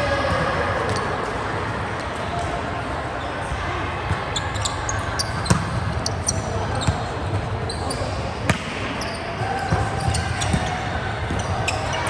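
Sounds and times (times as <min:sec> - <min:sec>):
sneakers squeaking on floor: 0:03.2 - 0:12.0
sharp volleyball hits: 0:08.4 - 0:11.4.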